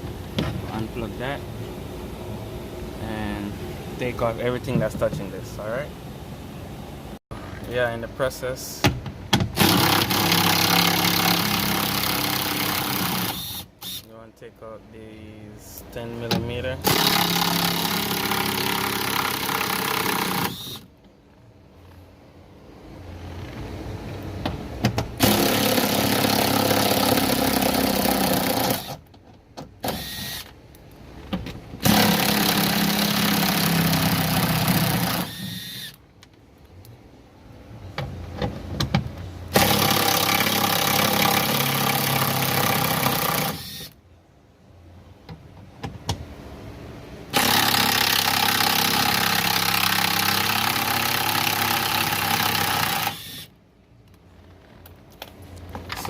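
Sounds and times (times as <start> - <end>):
cordless power tool spinning bolts: 9.6 - 14.1, 16.8 - 20.9, 25.2 - 29.0, 31.8 - 36.0, 39.5 - 44.0, 47.3 - 53.5.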